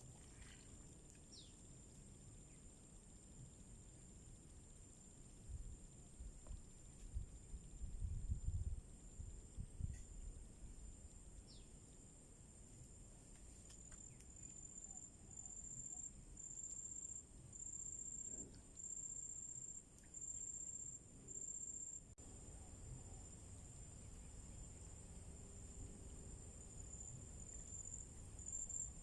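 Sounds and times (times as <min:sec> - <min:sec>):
insect trilling: 0:26.2 - 0:29.0.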